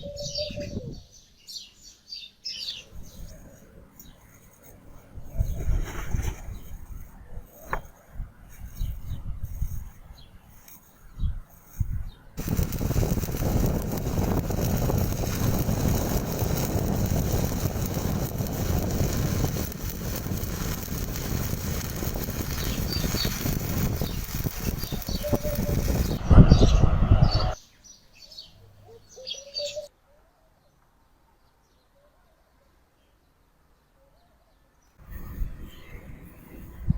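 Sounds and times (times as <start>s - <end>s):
welding arc crackling and hissing: 6.3s - 26.3s.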